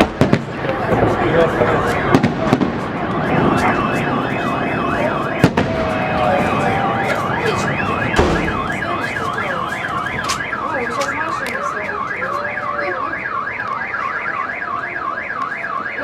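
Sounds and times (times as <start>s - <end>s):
firework bangs and pops: 0.0s - 6.0s, 7.2s - 9.3s
car alarm siren warbling: 0.9s - 16.0s.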